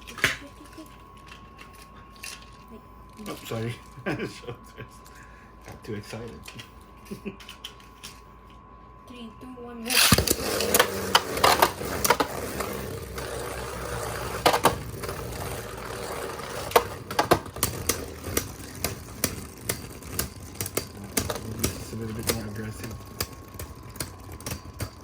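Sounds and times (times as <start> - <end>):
spinning tops launched: 9.9 - 25.0
spinning tops whirring and scraping: 9.9 - 25.0.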